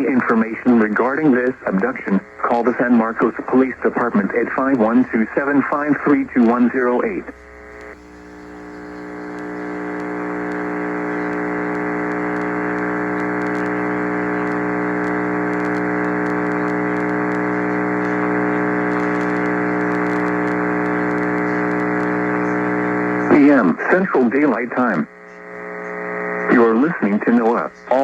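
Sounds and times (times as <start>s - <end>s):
electrical buzz: 5.4s - 23.5s.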